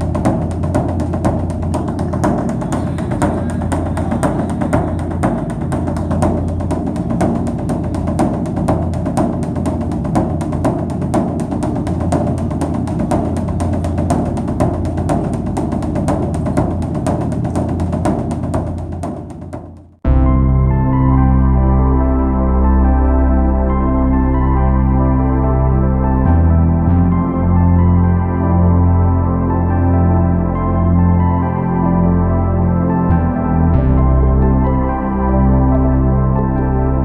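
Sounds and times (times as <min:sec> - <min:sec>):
low drone: 0:00.0 - 0:17.8, 0:20.1 - 0:37.0
rapid drum and wood block percussion: 0:00.0 - 0:20.0.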